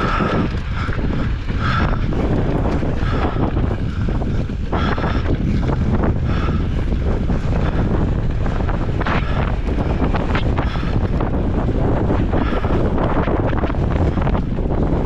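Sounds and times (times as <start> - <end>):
bike rattling over rough trail: 0.0 - 15.0
wind buffeting microphone: 0.0 - 15.0.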